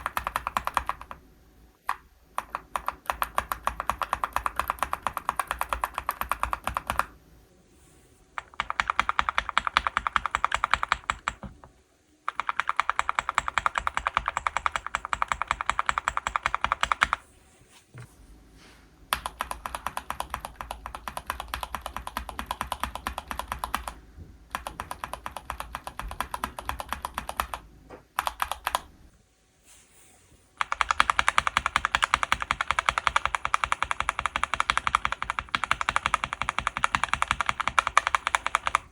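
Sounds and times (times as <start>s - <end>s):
fast typing on mechanical keyboard: 0.0s - 1.2s, 1.8s - 7.1s, 8.4s - 11.6s, 12.3s - 17.2s, 19.1s - 27.6s, 28.2s - 28.9s, 30.6s - 38.9s.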